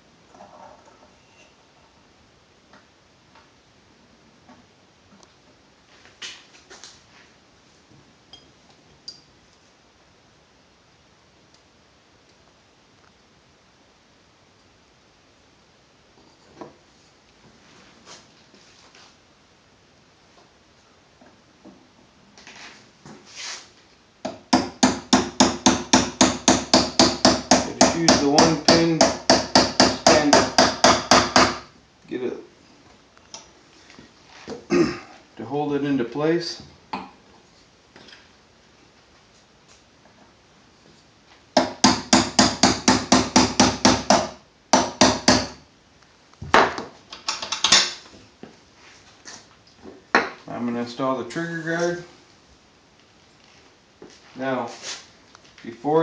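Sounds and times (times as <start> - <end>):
hammer tapping a punch: 24.2 - 31.6, 41.6 - 45.6.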